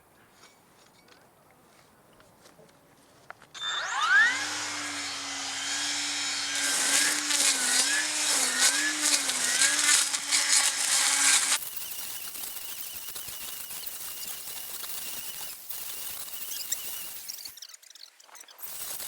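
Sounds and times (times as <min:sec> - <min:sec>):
cordless cutting tool motor whining: 0:03.6 - 0:17.5.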